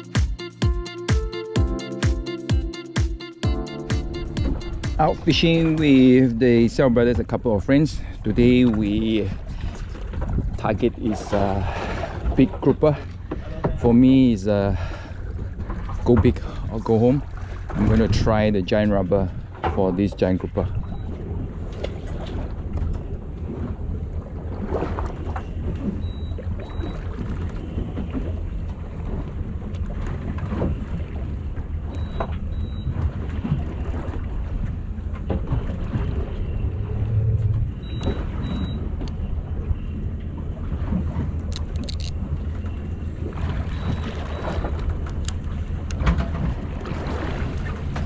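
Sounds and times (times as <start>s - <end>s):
short paired high beeps: 0.0s - 6.2s, 41.6s - 44.8s
boat engine running: 0.0s - 48.0s
wind noise: 8.8s - 12.4s.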